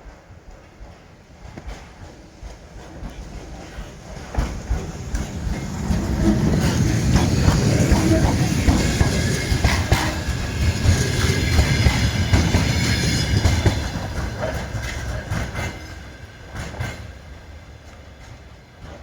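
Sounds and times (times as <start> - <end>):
low train rumble: 0.0 - 19.0
train wheels clicking over rail joints: 0.0 - 19.0.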